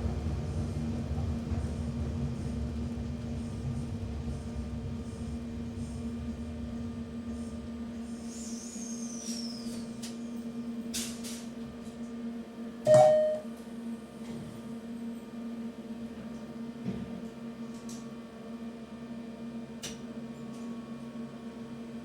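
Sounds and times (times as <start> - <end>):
short loud tone: 12.9 - 13.5.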